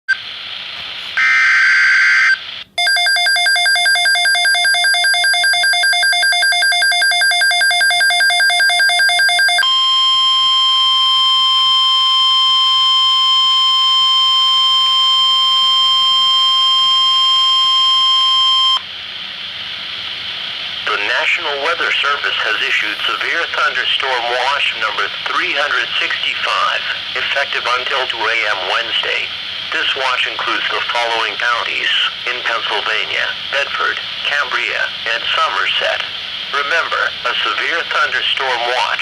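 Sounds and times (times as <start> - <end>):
radio hiss: 0.1 - 1.2, 19.0 - 39.0
steady warning alarm tone: 1.2 - 18.8
digital header tones: 2.8 - 10.7.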